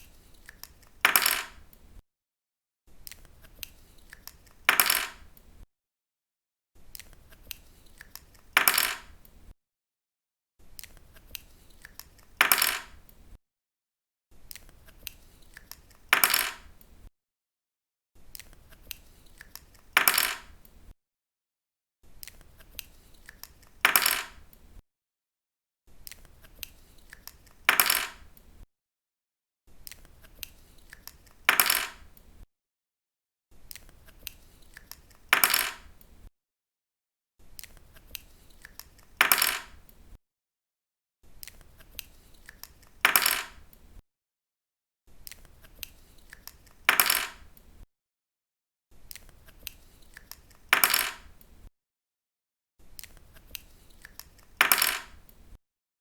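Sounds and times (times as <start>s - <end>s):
pen cap clattering on table: 54.6s - 55.1s.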